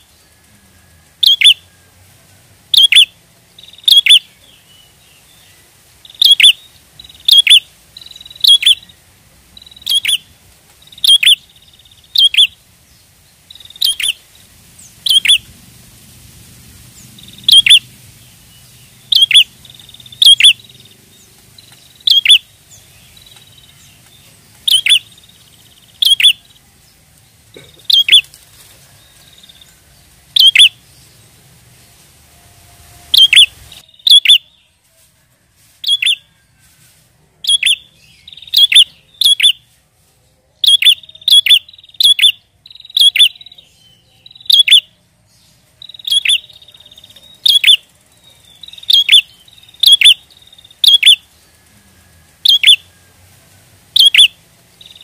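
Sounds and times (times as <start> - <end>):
bird chirping sharply: 1.2 - 1.6, 2.7 - 9.0, 9.6 - 12.6, 13.5 - 14.2, 14.8 - 15.5, 17.0 - 26.6, 27.8 - 28.3, 30.3 - 30.9, 33.1 - 34.6, 35.8 - 36.2, 37.4 - 39.6, 40.6 - 44.9, 45.8 - 51.3, 52.4 - 52.8, 54.0 - 55.0.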